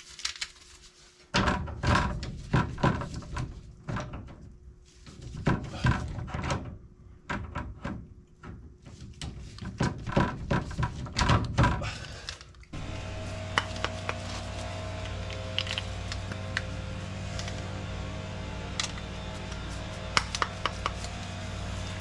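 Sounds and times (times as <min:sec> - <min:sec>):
knocks and clicks of hard objects: 0:13.4 - 0:14.4, 0:18.8 - 0:22.0.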